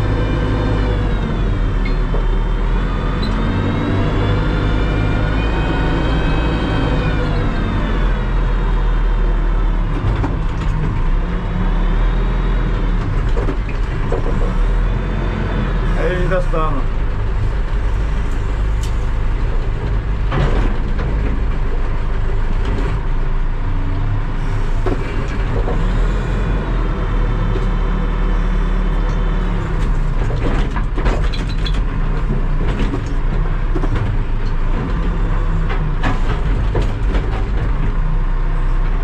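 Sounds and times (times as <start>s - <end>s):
diesel engine running under load: 0.0s - 39.0s
knocks and clatters: 13.0s - 14.6s, 29.1s - 38.0s.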